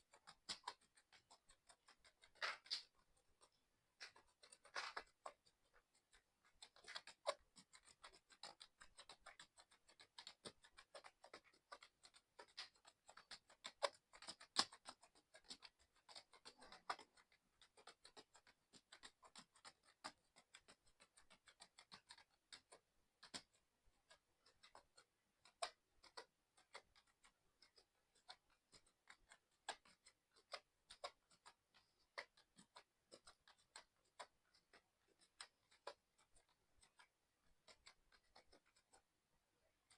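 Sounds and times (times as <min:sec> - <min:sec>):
mechanical keyboard typing: 0:00.0 - 0:39.1.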